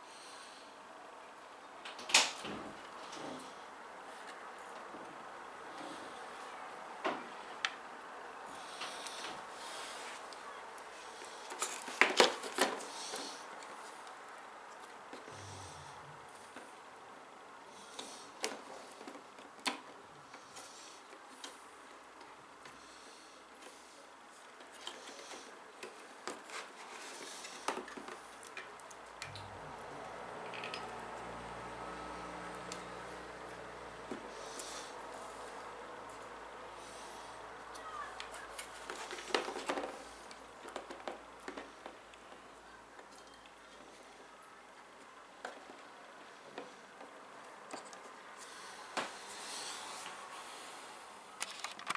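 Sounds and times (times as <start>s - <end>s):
steady low hum: 15.2s - 18.4s, 28.2s - 39.2s
soft rustle: 22.8s - 30.1s.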